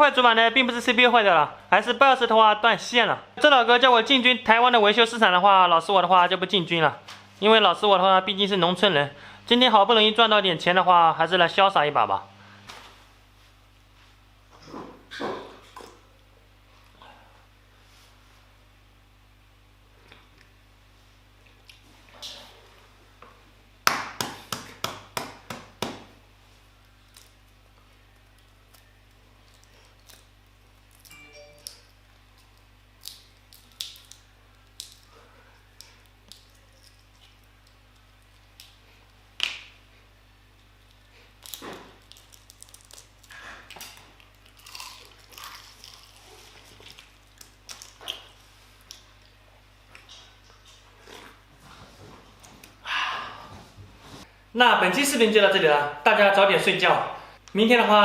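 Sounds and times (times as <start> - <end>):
sharp food snap: 23.8 - 26.0, 33.0 - 35.0, 39.4 - 39.8
crunching and chewing: 26.8 - 31.2, 32.2 - 39.2, 40.6 - 51.5.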